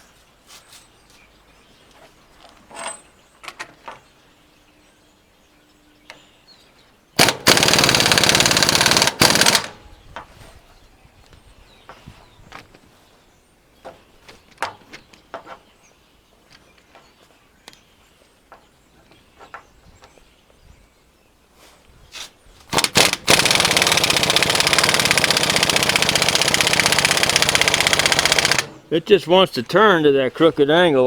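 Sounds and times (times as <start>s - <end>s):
pneumatic impact wrench hammering: 7.2s - 9.8s, 22.7s - 28.9s.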